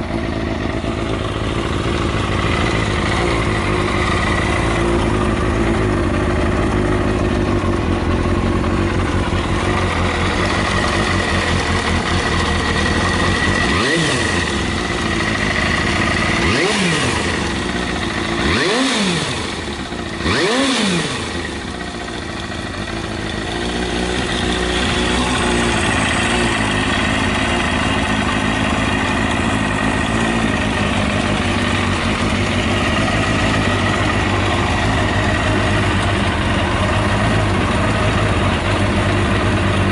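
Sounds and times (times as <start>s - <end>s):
engine revving: 0.0s - 39.9s
motorcycle engine idling: 0.0s - 39.9s.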